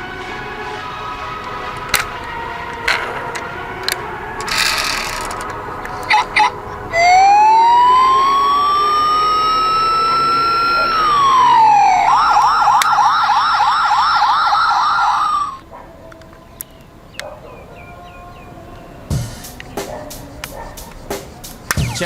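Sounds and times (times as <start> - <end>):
toy electronic siren: 1.1 - 15.6.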